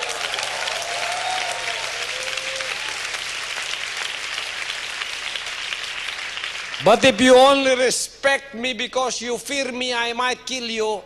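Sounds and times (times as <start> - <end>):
congregation applauding: 0.0 - 7.7.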